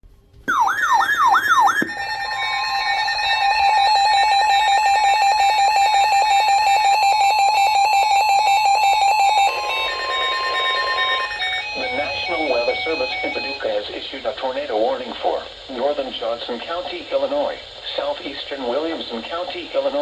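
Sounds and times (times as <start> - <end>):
falling siren-like sweeps: 0.5 - 14.0
harsh two-tone alarm pulsing: 0.5 - 14.2.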